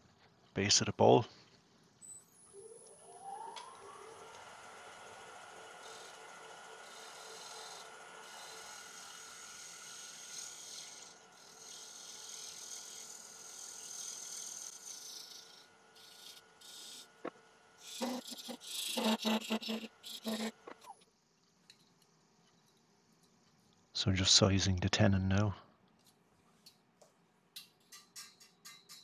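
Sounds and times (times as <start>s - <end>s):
lathe gouge scraping wood: 5.1s - 20.9s.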